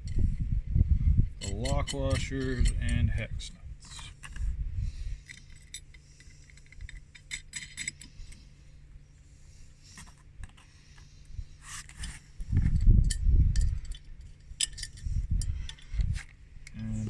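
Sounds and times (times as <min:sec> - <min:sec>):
low hum: 0:00.0 - 0:17.0
washers and nuts clinking: 0:01.4 - 0:03.1, 0:05.2 - 0:08.4.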